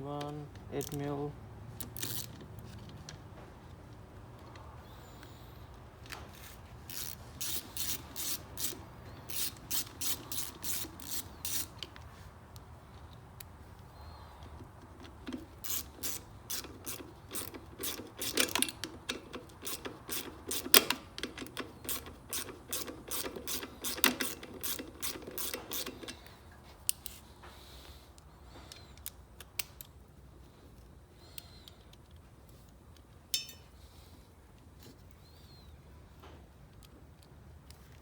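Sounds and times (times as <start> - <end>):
socket ratchet clicking: 1.7 - 2.4, 6.9 - 11.9, 14.7 - 26.3.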